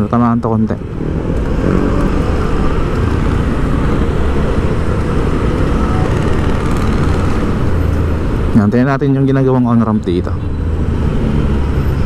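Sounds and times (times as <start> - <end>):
road traffic noise: 0.0 - 12.0
vehicle engine: 0.0 - 12.0.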